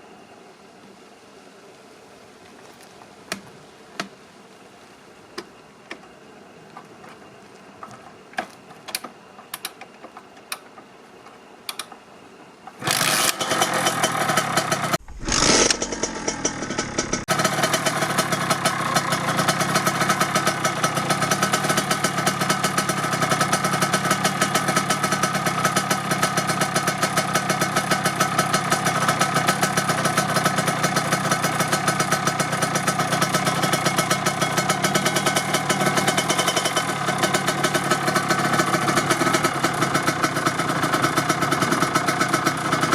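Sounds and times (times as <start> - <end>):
starter clicks: 7.8 - 12.0, 15.0 - 17.3
two-stroke engine starting and idling: 12.8 - 42.9.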